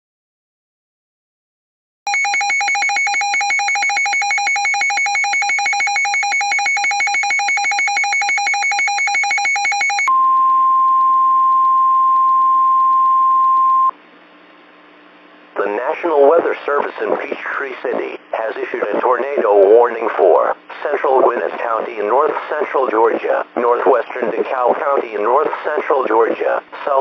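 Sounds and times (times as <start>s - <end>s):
pulsing electronic alarm beep: 2.1s - 13.9s
steady warning tone: 2.1s - 13.9s
faint radio hiss: 15.5s - 27.0s.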